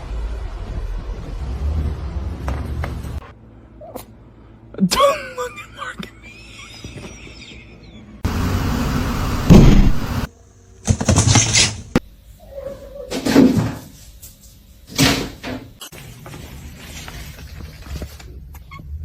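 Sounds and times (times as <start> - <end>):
loud bangs and clatter: 9.5 - 10.3.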